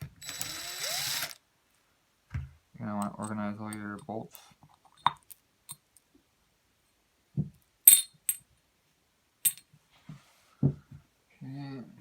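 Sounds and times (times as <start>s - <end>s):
metal bolts clinking: 7.9s - 8.4s.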